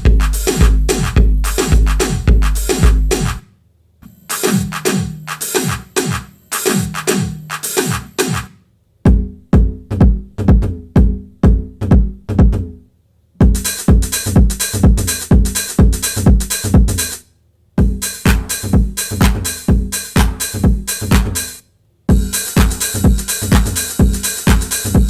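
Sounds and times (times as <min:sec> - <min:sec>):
electronic dance music: 0:00.0 - 0:03.4, 0:04.0 - 0:08.6, 0:17.8 - 0:25.0.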